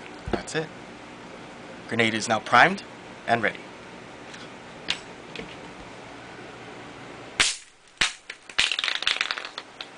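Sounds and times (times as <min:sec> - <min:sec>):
sharp crack: 0:07.4 - 0:09.9.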